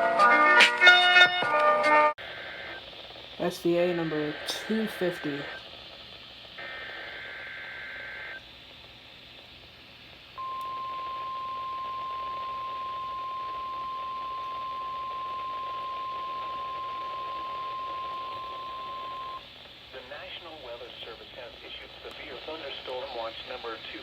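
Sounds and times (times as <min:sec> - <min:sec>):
steady high alarm tone: 0:10.4 - 0:19.4.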